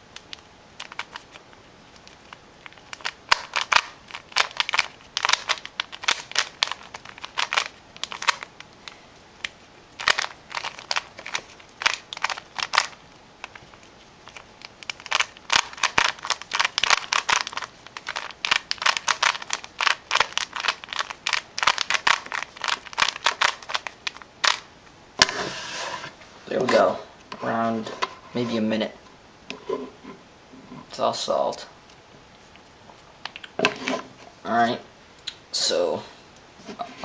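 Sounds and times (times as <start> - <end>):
plastic cube clicking and clacking: 2.3 - 8.5, 14.2 - 24.6.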